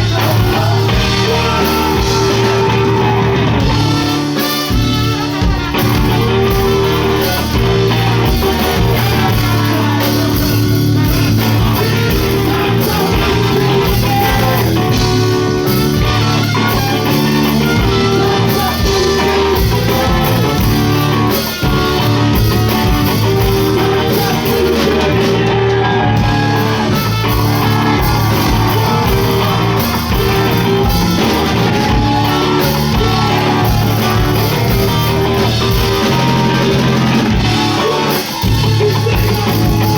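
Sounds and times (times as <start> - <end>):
live rock band playing: 0.0 - 39.9
person singing: 0.0 - 39.9.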